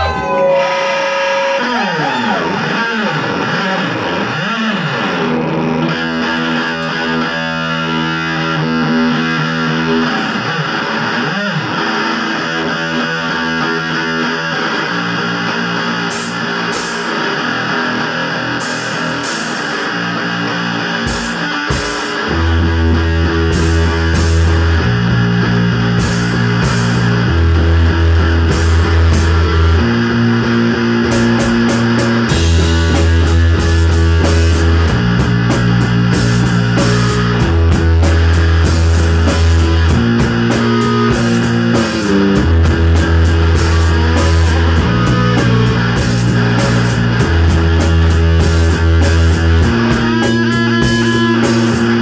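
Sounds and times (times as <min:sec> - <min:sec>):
live band music: 0:00.0 - 0:04.2, 0:16.1 - 0:17.4, 0:18.6 - 0:20.0, 0:21.0 - 0:24.9, 0:25.9 - 0:29.9, 0:31.0 - 0:52.0
distorted electric guitar: 0:00.0 - 0:52.0
sustained bass notes: 0:00.0 - 0:52.0
steady drumbeat: 0:21.0 - 0:22.6, 0:23.4 - 0:24.8, 0:26.0 - 0:27.5, 0:28.4 - 0:29.8, 0:31.1 - 0:52.0.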